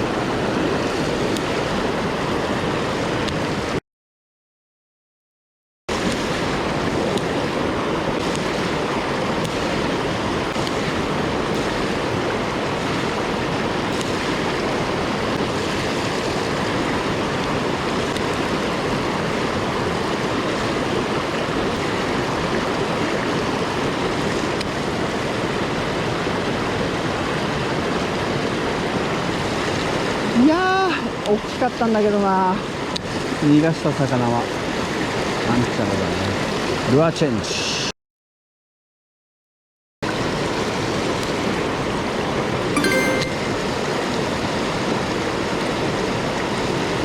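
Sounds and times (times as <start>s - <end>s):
mountain stream rushing: 0.0s - 3.8s, 5.9s - 24.4s.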